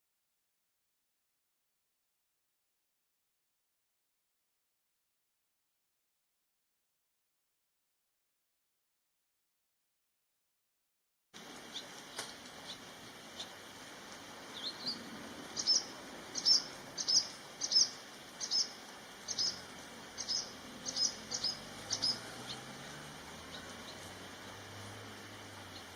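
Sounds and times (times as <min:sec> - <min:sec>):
swallow alarm calls: 0:14.5 - 0:22.6.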